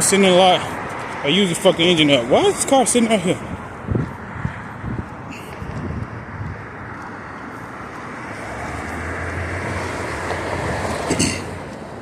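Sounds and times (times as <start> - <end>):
vehicle driving past: 4.3 - 12.0.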